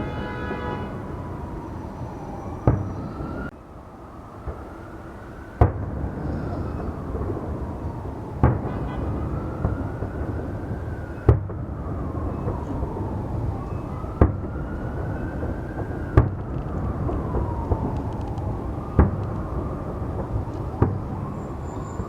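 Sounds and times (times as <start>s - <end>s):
fireworks bangs: 2.6s - 3.2s, 5.6s - 22.0s.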